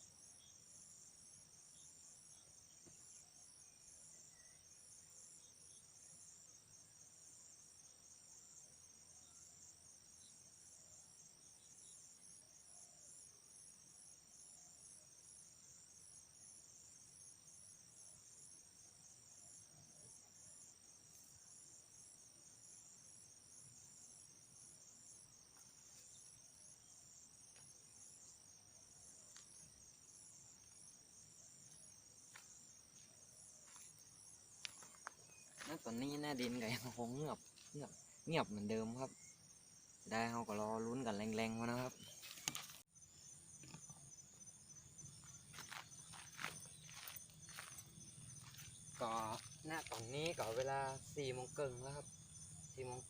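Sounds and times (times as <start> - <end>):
insect trilling: 22.8 - 53.0.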